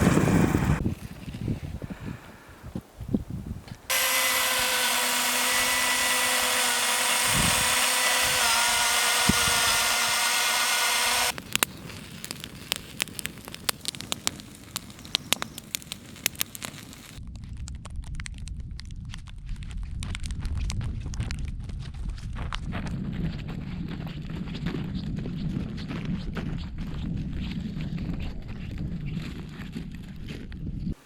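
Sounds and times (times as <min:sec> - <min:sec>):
power ice auger drilling: 0:03.9 - 0:11.4.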